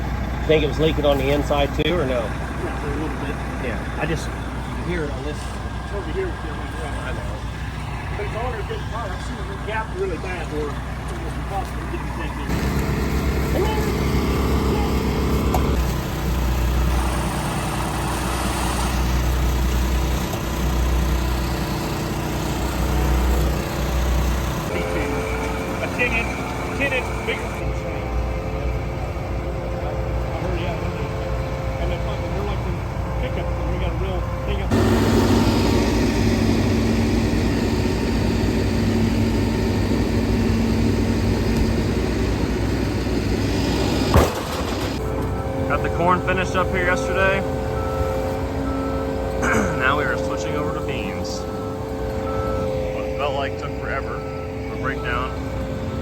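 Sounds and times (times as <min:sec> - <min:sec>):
farm machine engine idling: 0:00.0 - 0:56.0.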